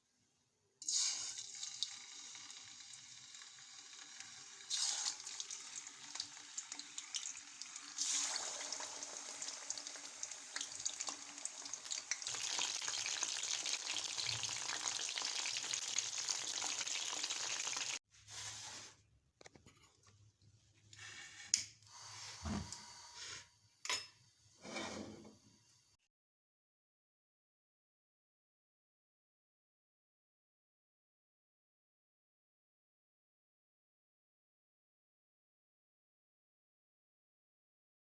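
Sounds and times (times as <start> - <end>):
chicken sizzling in hot oil: 0.8 - 18.0.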